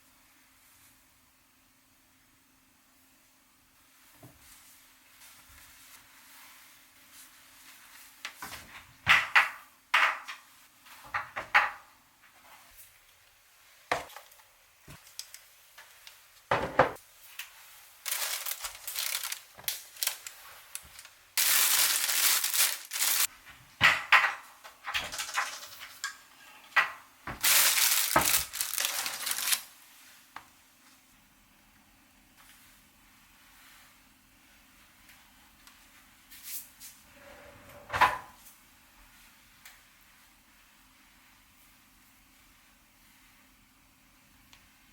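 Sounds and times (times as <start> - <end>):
dishes and utensils clinking: 23.8 - 27.1.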